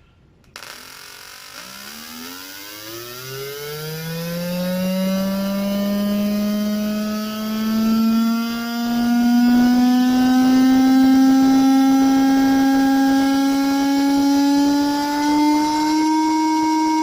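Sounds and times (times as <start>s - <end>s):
buzzy engine-like drone from speaker: 0.6s - 17.0s.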